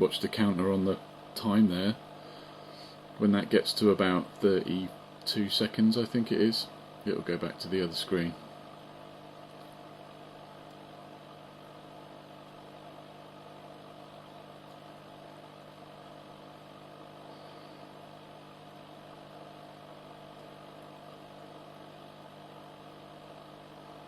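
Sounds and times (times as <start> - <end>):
machine low hum: 0.0 - 24.0.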